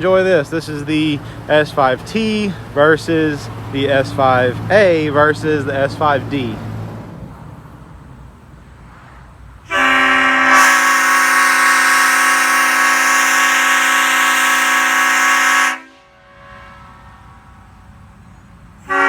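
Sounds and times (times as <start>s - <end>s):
air horn chord: 9.7s - 17.4s.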